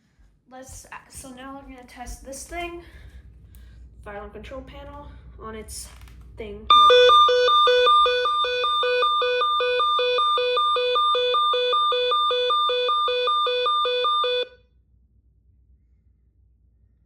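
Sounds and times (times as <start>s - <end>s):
two-tone fire alarm: 6.7s - 14.6s.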